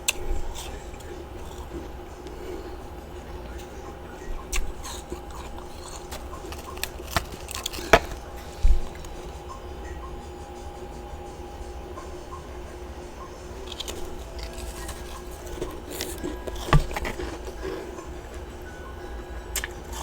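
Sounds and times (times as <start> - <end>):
steady background hum: 0.0 - 20.0
frost being crunched: 4.4 - 9.4, 13.6 - 18.4.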